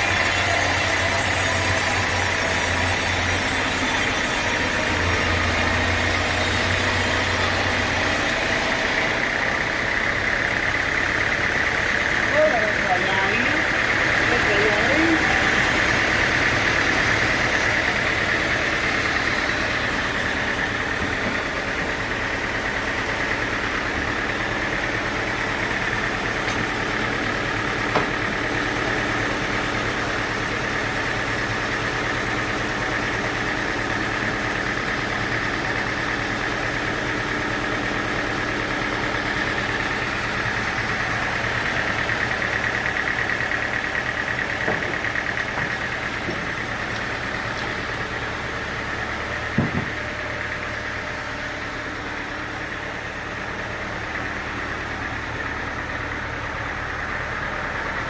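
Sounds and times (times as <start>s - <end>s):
sawmill machinery humming: 0.0s - 58.0s
machine whine: 12.3s - 22.5s.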